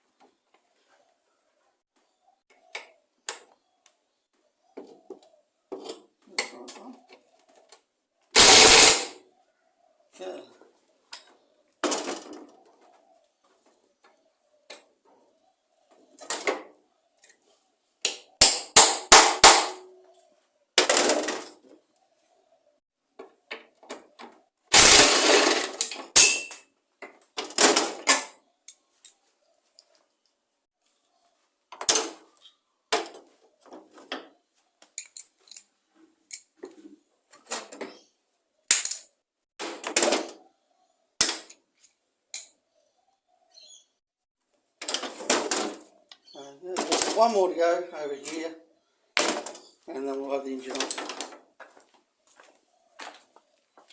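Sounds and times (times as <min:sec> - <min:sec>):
hand tools clinking on metal: 0:24.8 - 0:26.6, 0:50.7 - 0:51.4.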